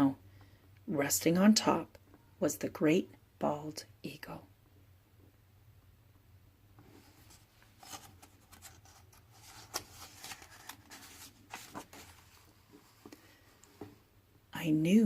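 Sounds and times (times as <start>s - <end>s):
paper rustling and crinkling: 7.0s - 13.9s.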